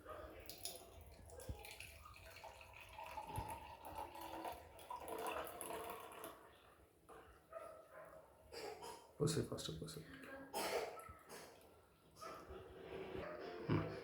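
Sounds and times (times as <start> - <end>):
water trickling and splashing: 0.4 - 6.5.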